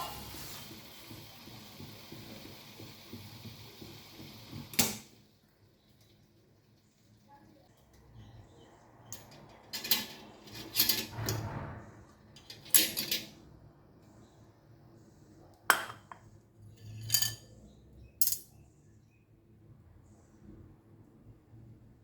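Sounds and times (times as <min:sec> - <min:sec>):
dishes and cutlery clinking: 0:00.0 - 0:00.5, 0:09.1 - 0:11.4, 0:15.7 - 0:18.5.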